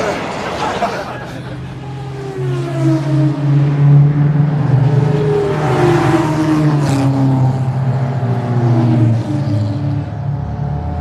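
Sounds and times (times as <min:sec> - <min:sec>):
engine revving: 0:01.8 - 0:11.0.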